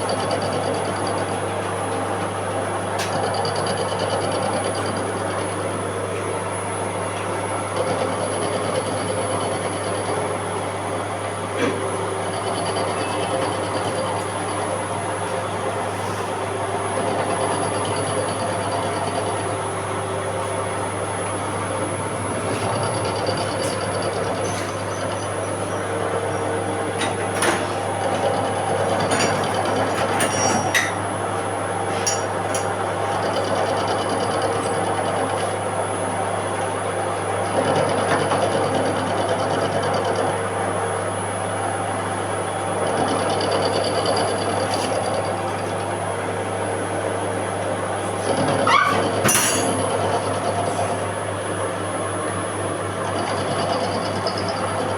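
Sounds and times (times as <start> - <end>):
machine tool humming: 0.0 - 30.1.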